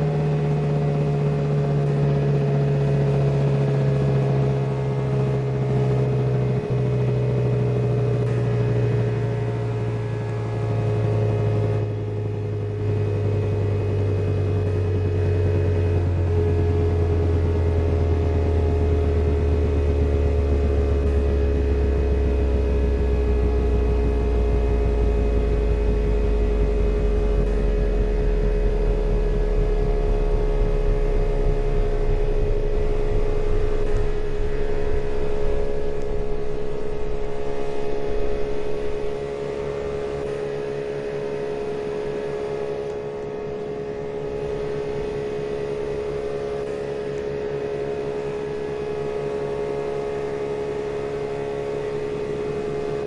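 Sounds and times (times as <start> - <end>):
deep rumble: 12.8 - 46.7.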